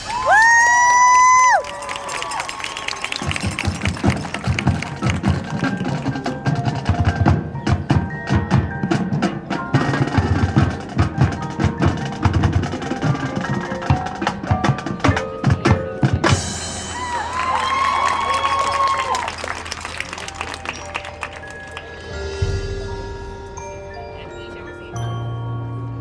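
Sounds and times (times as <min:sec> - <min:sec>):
drum and woodblock strikes: 0:03.0 - 0:17.9
bells and marimba ringing: 0:19.6 - 0:26.0.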